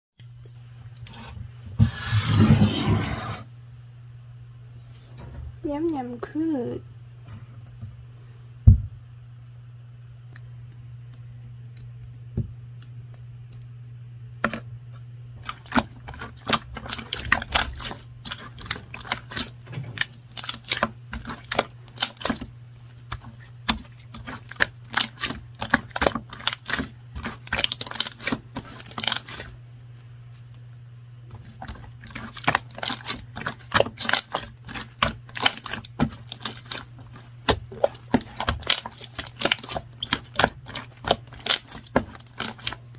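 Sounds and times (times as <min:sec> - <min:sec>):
steady low hum: 0:00.2 - 0:42.9.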